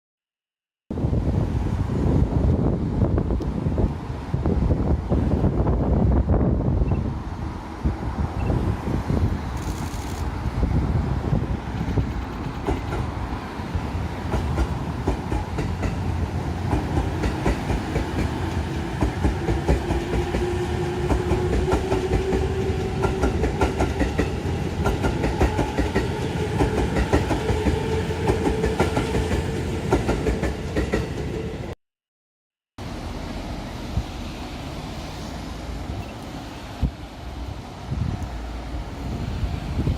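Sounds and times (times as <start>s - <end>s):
train rumble: 1.0s - 31.8s, 32.8s - 39.9s
train wheels clacking over joints: 11.7s - 13.1s.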